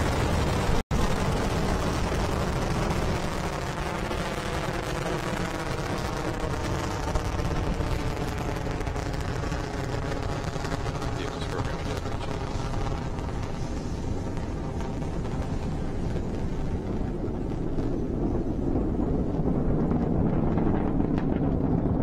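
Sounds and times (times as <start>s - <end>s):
rocket engines rumbling: 0.0s - 22.0s.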